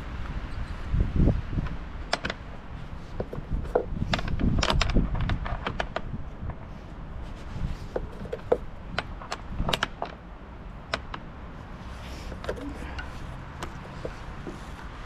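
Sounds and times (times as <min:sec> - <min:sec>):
sharp clicks and light knocks: 0:01.6 - 0:02.4, 0:03.2 - 0:06.6, 0:07.9 - 0:10.2, 0:10.8 - 0:11.3, 0:12.3 - 0:15.0.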